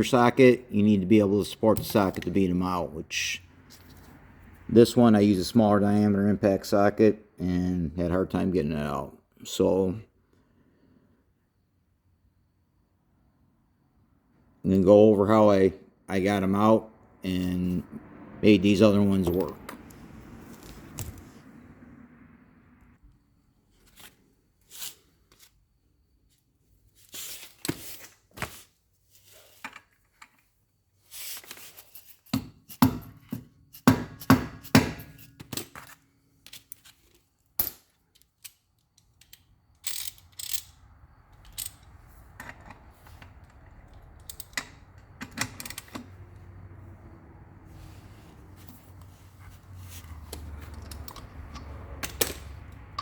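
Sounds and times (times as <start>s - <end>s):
metal clicks and clinks: 37.6s - 42.8s, 43.4s - 46.0s, 50.3s - 53.0s.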